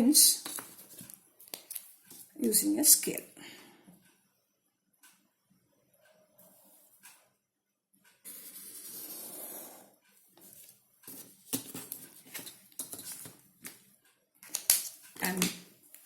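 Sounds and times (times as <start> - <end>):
pen scratching on paper: 8.3 - 9.9.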